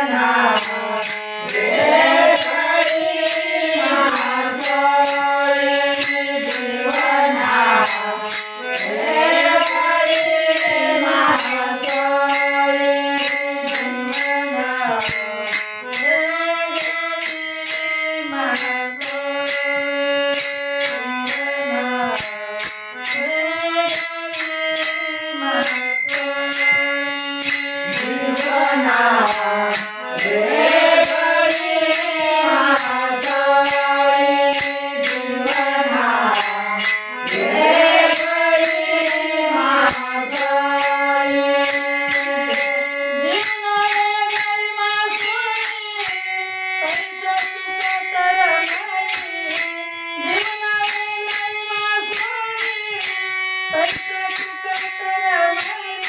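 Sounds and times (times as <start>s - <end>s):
steady held drone tones: 0.0s - 16.0s, 22.2s - 47.5s
bright metallic percussion: 0.0s - 56.0s
person singing melismatic phrases: 8.9s - 12.4s, 27.9s - 41.7s.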